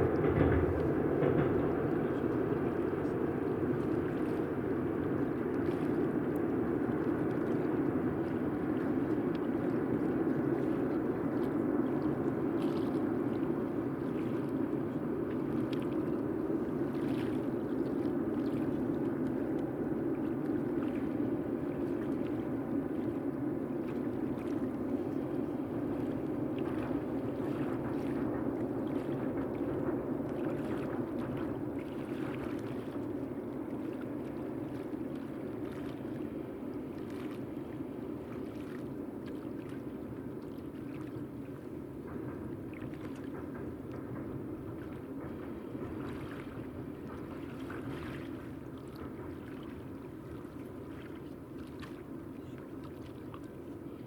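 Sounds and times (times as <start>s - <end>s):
freight train wheels rumbling on rails: 0.0s - 5.3s, 25.5s - 31.8s, 41.8s - 47.6s.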